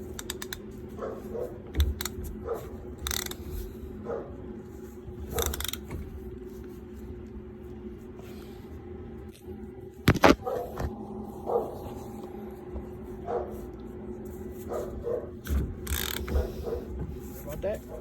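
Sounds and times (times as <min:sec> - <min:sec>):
ratchet clicking: 0:03.0 - 0:03.4, 0:15.8 - 0:16.3.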